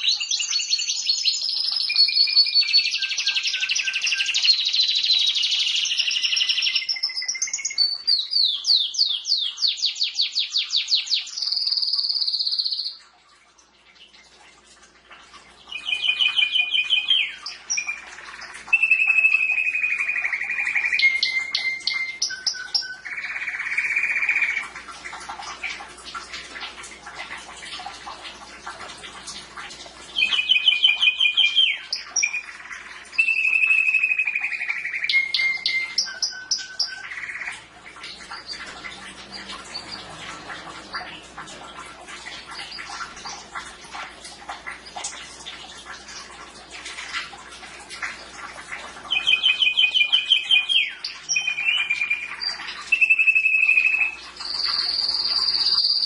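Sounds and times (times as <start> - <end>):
canary trilling: 0.0 - 13.0, 15.7 - 24.8, 30.2 - 41.4, 49.1 - 56.0
canary twittering: 0.0 - 13.0, 15.7 - 24.7, 30.2 - 41.4, 49.1 - 56.0.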